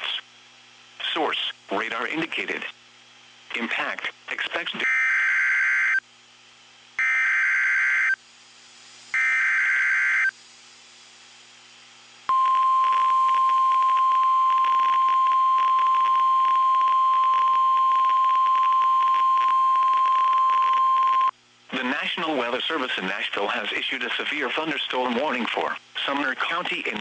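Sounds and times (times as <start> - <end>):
steady warning alarm tone: 4.8 - 6.0, 7.0 - 8.2, 9.1 - 10.3
screechy digital data tone: 9.2 - 10.3.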